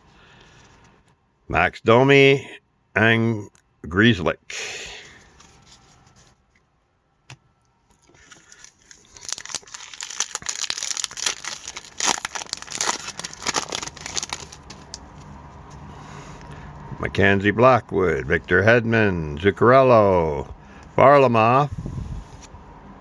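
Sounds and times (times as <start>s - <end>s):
card pack wrapper crinkling and tearing: 8.0s - 15.3s.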